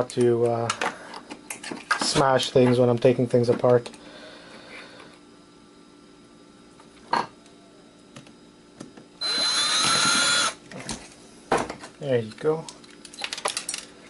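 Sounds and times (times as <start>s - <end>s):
cordless drill spinning up: 9.2s - 10.6s.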